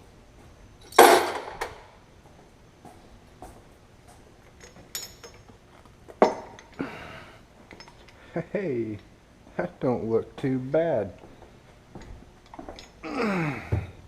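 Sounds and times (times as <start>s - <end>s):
light ringing metal clink: 4.6s - 5.6s
metal parts clattering: 4.6s - 6.8s, 7.7s - 8.3s, 12.4s - 13.0s.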